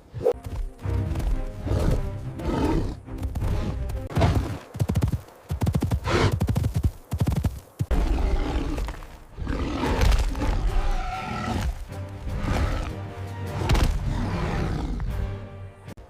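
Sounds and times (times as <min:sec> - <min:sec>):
background music: 0:00.0 - 0:05.4, 0:07.9 - 0:16.0
large animal roars: 0:07.9 - 0:15.1.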